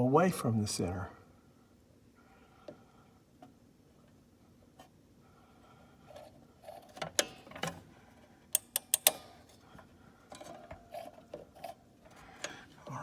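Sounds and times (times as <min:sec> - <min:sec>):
metal clicks and rattles: 0:08.6 - 0:09.6.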